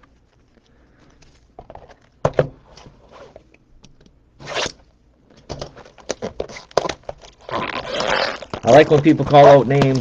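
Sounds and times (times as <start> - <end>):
card packaging crinkling: 5.7 - 10.0
packaging ripping: 5.9 - 10.0.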